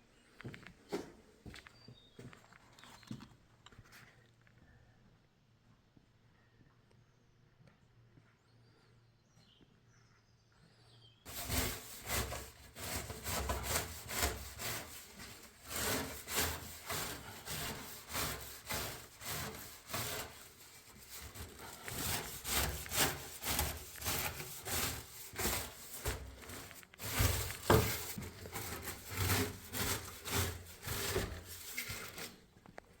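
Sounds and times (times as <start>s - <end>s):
scrubbing old wood: 11.3s - 32.5s.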